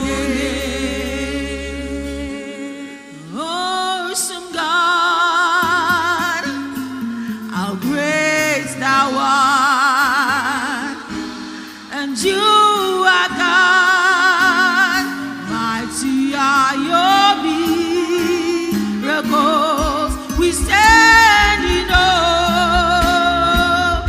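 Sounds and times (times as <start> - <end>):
sustained low instrumental notes: 0.0 - 3.1
person singing gospel with vibrato: 0.0 - 24.0.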